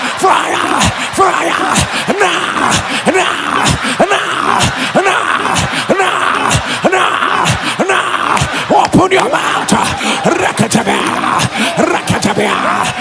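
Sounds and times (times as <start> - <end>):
man praying aloud: 0.0 - 13.0.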